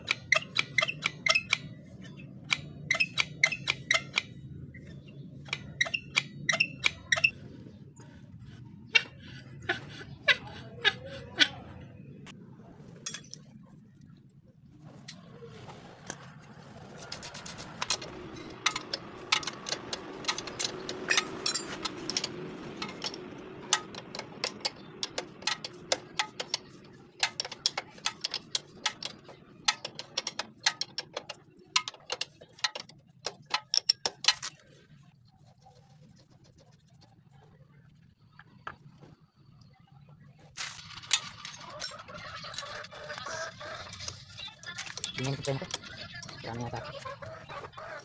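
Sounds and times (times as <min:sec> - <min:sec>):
sharp metallic clicks and clinks: 0:13.0 - 0:13.5, 0:17.0 - 0:34.6, 0:40.6 - 0:43.3.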